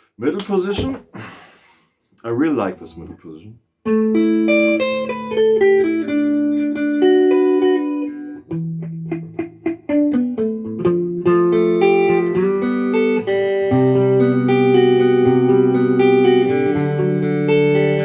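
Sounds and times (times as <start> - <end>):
muted guitar strums: 0.3 - 1.3, 3.9 - 18.0
clean electric guitar playing: 3.8 - 18.0.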